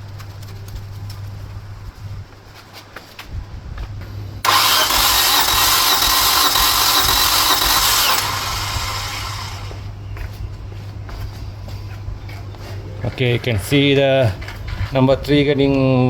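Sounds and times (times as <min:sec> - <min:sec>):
engine cranking on starter: 0:04.4 - 0:09.9.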